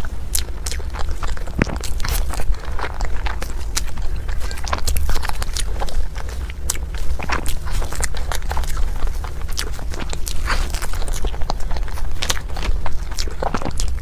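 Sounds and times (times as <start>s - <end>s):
dull low thudding: 0.0s - 14.0s
wet chewing of food: 0.0s - 14.0s.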